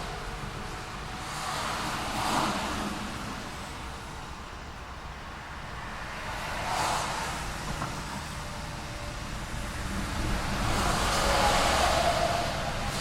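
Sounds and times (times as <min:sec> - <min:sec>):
low rumble of traffic: 0:00.0 - 0:13.0
car passing: 0:05.5 - 0:13.0.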